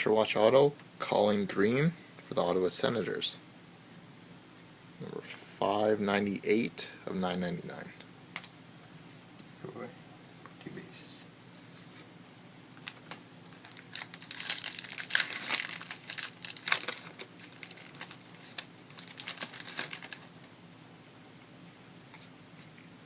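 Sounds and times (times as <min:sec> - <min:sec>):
foil wrapper crinkling: 0:12.8 - 0:20.6.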